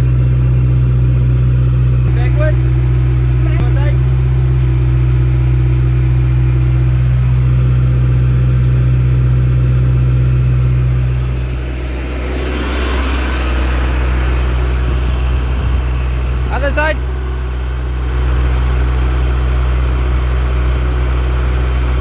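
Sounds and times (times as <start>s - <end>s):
diesel engine running: 0.0s - 22.0s
gritty rattling noise: 0.8s - 22.0s.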